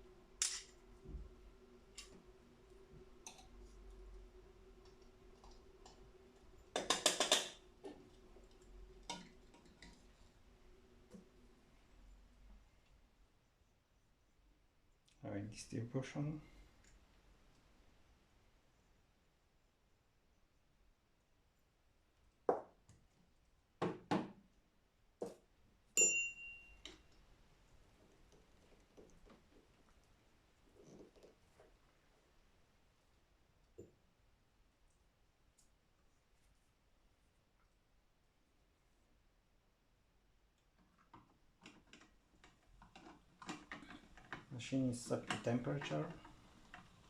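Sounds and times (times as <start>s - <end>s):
faint steady hum: 0.0s - 47.0s
espresso tools knocking: 6.8s - 7.6s
bright metallic clink: 26.0s - 26.9s.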